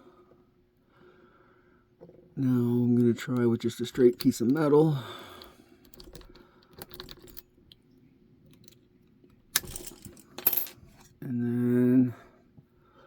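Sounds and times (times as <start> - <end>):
metal clicking and rattling in lock: 3.0 - 4.8, 5.4 - 7.5.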